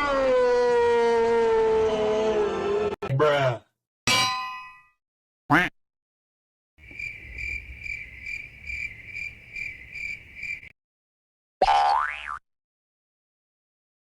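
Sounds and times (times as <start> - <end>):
crickets chirring: 6.8 - 10.7.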